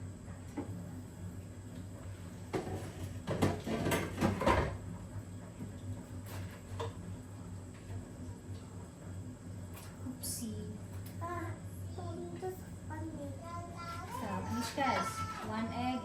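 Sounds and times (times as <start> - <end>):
steady low hum: 0.0 - 16.0
kitchen knocks and rattles: 2.6 - 4.8.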